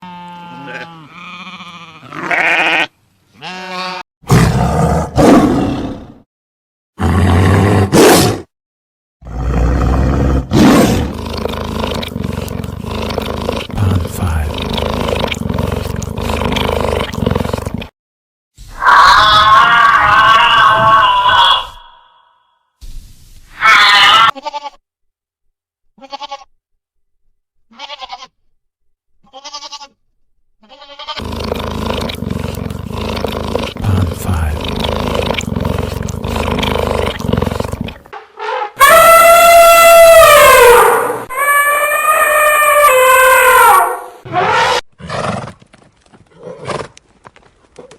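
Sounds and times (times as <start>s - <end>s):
quavering bleats: 0.0s - 4.0s, 11.4s - 17.2s, 18.8s - 22.4s, 26.0s - 26.5s, 27.7s - 28.4s, 29.2s - 30.0s, 30.6s - 38.0s
animal roaring: 4.3s - 6.2s, 7.0s - 8.4s, 9.2s - 17.9s, 18.7s - 22.4s, 31.2s - 45.4s.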